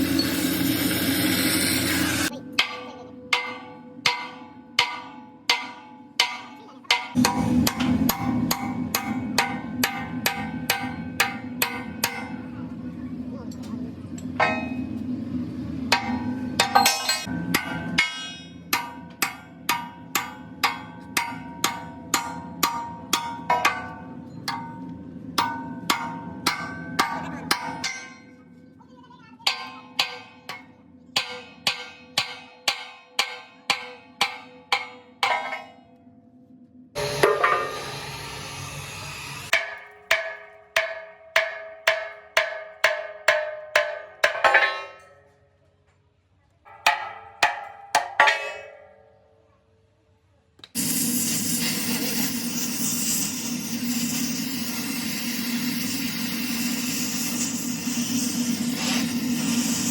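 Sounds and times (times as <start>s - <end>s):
harsh grinding hiss: 50.8s - 59.9s.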